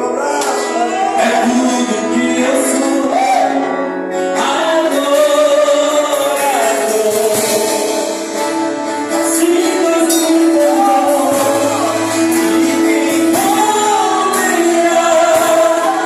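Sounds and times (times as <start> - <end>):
voices singing: 0.0 - 8.4, 9.2 - 16.0
worship band playing: 0.0 - 16.0.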